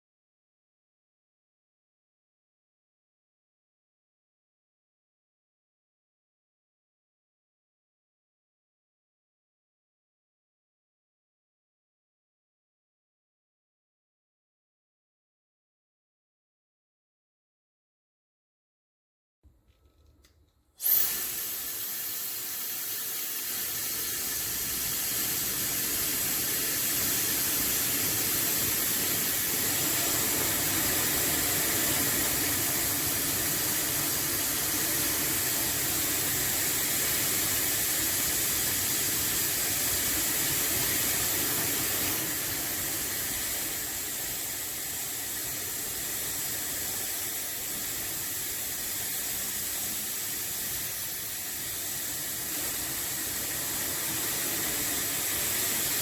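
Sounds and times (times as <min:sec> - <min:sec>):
hair dryer blowing: 0:20.8 - 0:56.0.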